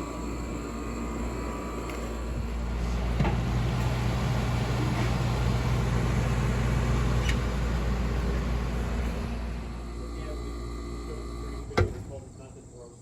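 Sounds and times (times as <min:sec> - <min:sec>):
air conditioning unit hum: 0:00.0 - 0:13.0.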